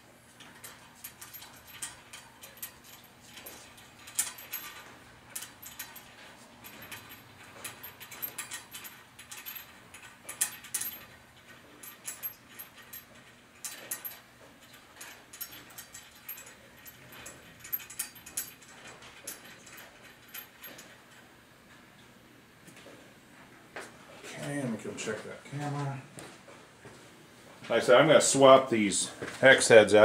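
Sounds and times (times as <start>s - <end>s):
metallic clinking of bolts and nuts: 0.3s - 22.0s.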